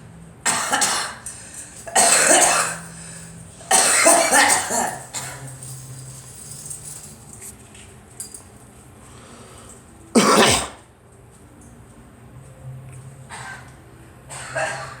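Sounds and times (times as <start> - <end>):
girl coughing: 0.5 - 1.2, 1.9 - 3.1, 3.7 - 5.5, 10.2 - 10.8, 14.3 - 15.0.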